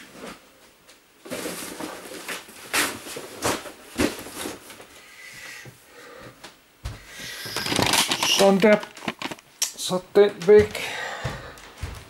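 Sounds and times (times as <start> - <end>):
rustling: 7.2 - 9.6.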